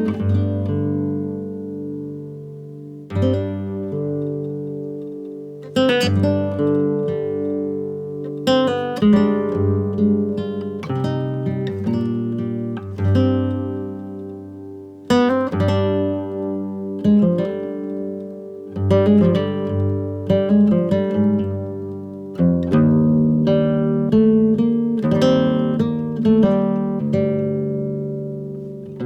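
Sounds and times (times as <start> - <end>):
acoustic guitar slow chords: 0.0 - 29.0.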